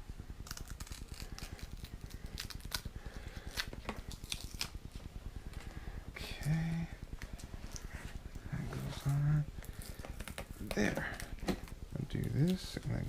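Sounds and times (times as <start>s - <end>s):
low steady rumble: 0.0s - 13.0s.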